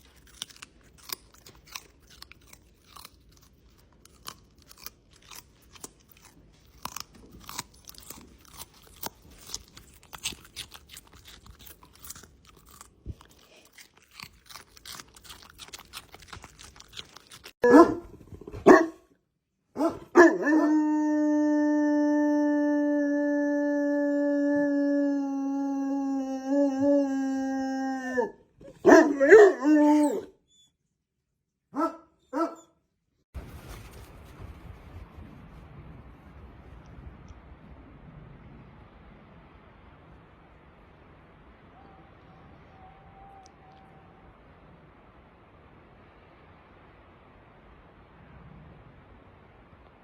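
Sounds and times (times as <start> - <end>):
dog crunching and chewing: 0.0 - 18.8
dog barking: 17.6 - 19.1, 19.8 - 20.7, 28.7 - 30.3, 31.7 - 32.7
dog howling: 19.8 - 30.4, 41.7 - 44.4.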